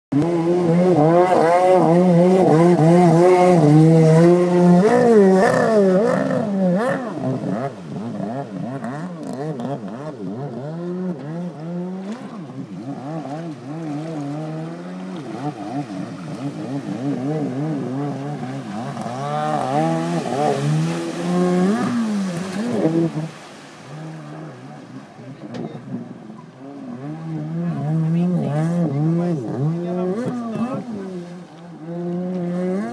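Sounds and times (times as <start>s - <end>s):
jet ski engine revving: 0.1s - 32.9s.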